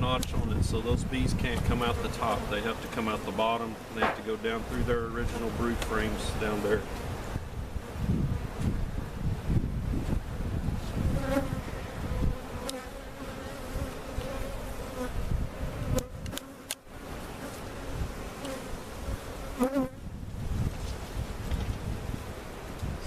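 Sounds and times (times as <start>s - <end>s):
bees buzzing: 1.7s - 9.6s, 10.2s - 20.1s.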